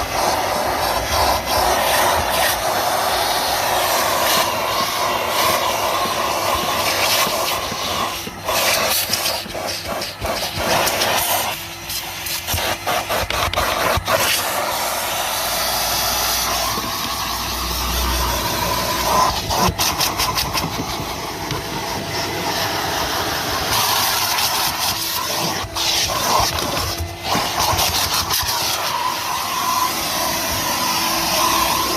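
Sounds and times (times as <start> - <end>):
vacuum cleaner running: 0.0 - 31.9.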